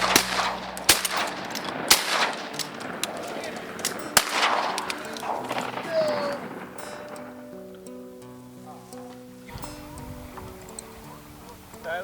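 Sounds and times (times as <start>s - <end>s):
shotgun blasts echoing: 0.0s - 7.5s
faint clicks: 0.0s - 11.9s.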